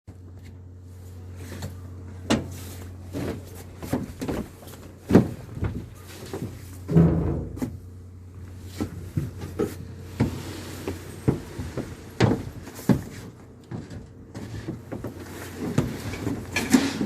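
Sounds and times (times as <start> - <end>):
boat engine humming: 0.2 - 17.0
knocks and clatter: 3.2 - 7.9, 8.8 - 17.0.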